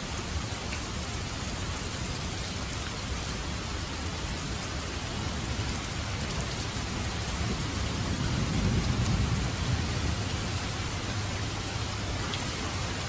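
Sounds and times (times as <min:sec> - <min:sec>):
heavy rain hissing: 0:00.0 - 0:13.0
thunder rumbling: 0:07.4 - 0:12.0.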